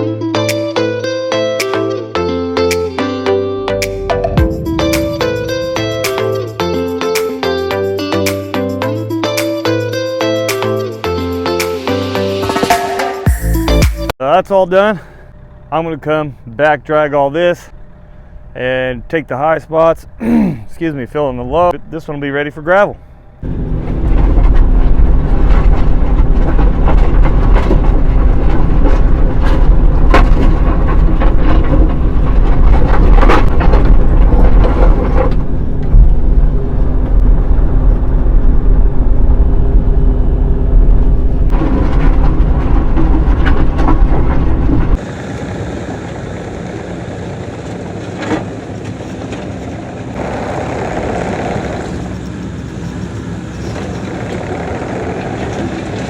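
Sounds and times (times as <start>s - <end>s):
excavator diesel engine: 0.0s - 56.0s
bucket clanks and scrapes: 23.8s - 35.9s, 41.5s - 45.0s.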